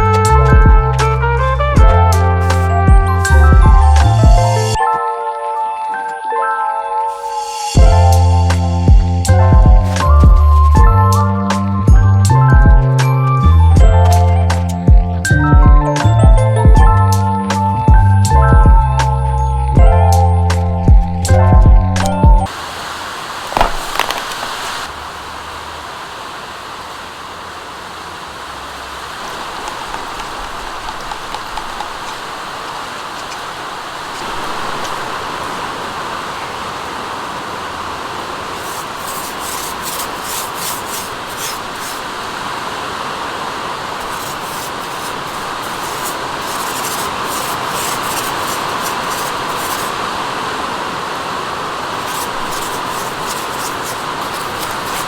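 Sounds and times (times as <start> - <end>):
steady rain falling: 0.0 - 4.7, 22.4 - 55.0
rapid high-pitched hissing: 38.5 - 42.1, 44.0 - 50.0, 51.9 - 55.0.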